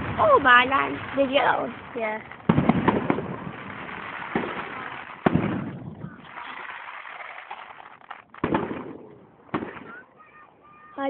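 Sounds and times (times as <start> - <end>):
firework bangs: 0.0 - 11.0
firework crackling: 0.0 - 11.0.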